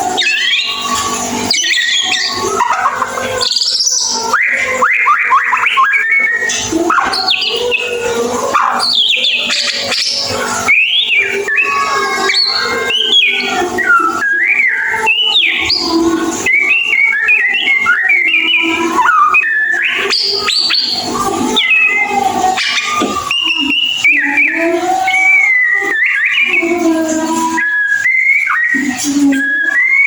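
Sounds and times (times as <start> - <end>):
bird singing whistled notes: 0.0 - 30.0.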